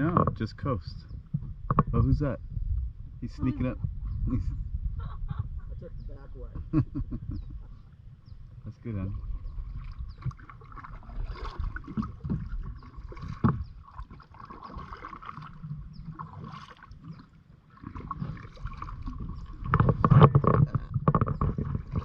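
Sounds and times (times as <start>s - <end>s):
water washing along hull: 7.4s - 22.0s
paddle splashing in water: 9.0s - 22.0s.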